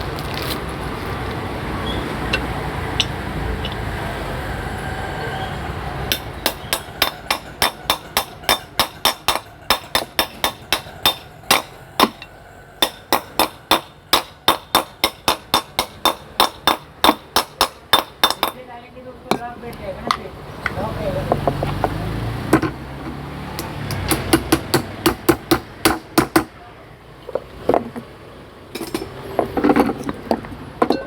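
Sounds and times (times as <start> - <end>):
hammer tapping on metal: 2.3 - 3.8, 6.1 - 18.6, 23.5 - 26.5.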